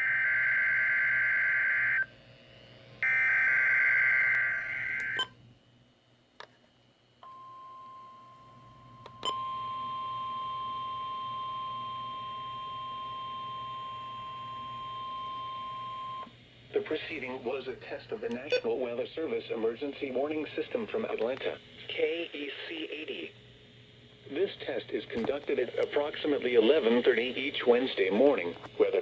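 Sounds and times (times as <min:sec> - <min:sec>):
steady warning alarm tone: 0:00.0 - 0:02.1, 0:03.0 - 0:05.3, 0:07.2 - 0:16.3.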